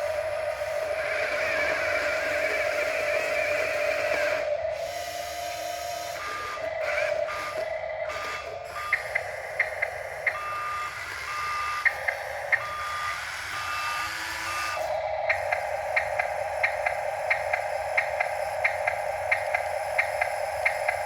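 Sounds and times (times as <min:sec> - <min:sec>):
reversing alarm beeping: 0:00.0 - 0:21.0
sharp ticks: 0:15.3 - 0:21.0.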